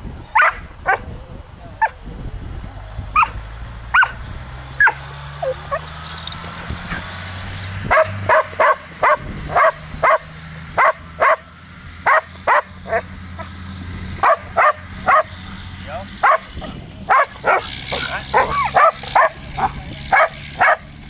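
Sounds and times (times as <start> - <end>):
dog barking: 0.4 - 1.0, 3.2 - 4.2, 4.8 - 6.0, 7.9 - 13.5, 14.2 - 15.4, 16.2 - 20.9.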